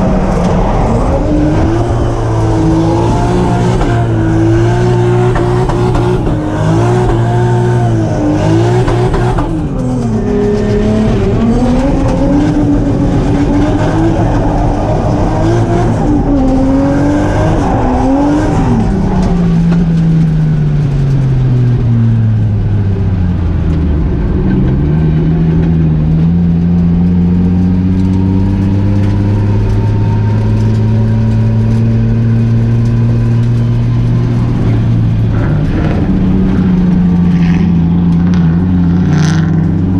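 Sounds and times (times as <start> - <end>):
car engine revving hard: 0.0 - 19.2.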